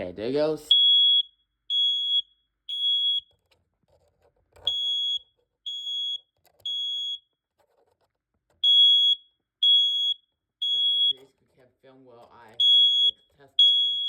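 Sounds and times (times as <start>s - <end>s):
smoke alarm beeping: 0.6s - 3.3s, 4.6s - 7.3s, 8.6s - 11.2s, 12.6s - 14.0s.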